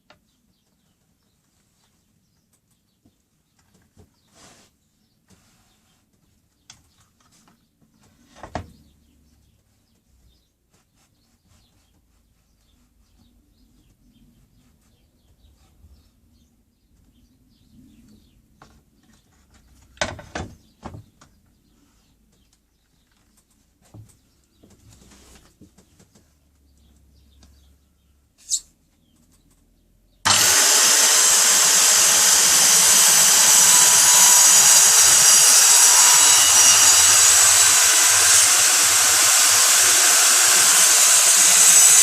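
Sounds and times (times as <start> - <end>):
chirp-like squeaks: 28.4 - 29.8.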